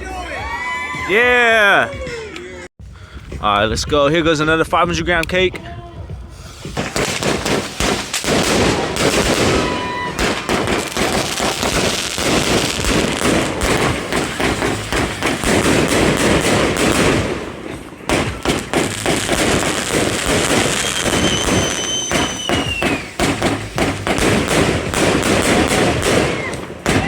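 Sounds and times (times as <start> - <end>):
firework cake firing: 6.4 - 27.0.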